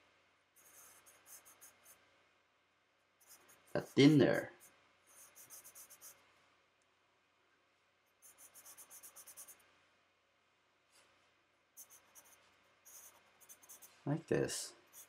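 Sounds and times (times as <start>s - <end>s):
charcoal scratching on paper: 0.6s - 2.0s, 3.2s - 6.2s, 8.1s - 9.6s, 11.8s - 14.1s.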